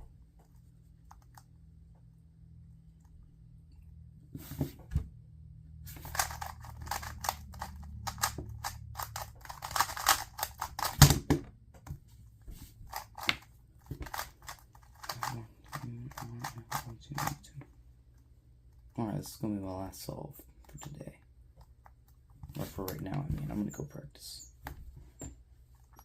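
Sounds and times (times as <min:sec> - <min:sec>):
speed cube layers clicking: 0:05.9 - 0:11.1, 0:12.9 - 0:17.4.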